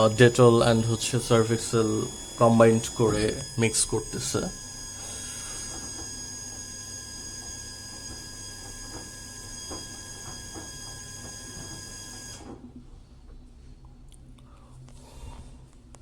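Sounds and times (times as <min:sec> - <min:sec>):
high electronic whine: 0:00.0 - 0:07.2
washer drum motor humming: 0:00.0 - 0:12.8.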